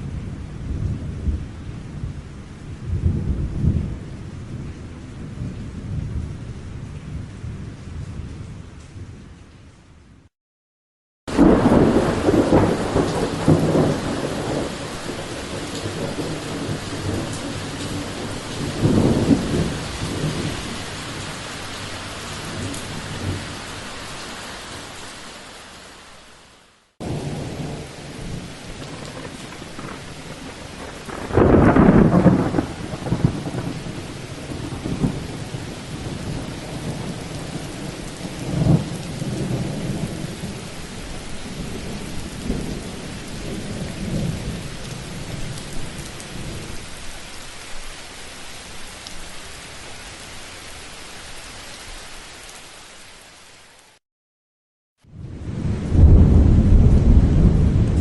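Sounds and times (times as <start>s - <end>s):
rolling thunder rumbles: 2.8s - 9.2s, 11.3s - 23.6s, 27.0s - 46.7s, 55.1s - 58.0s
rain hiss: 11.3s - 54.0s.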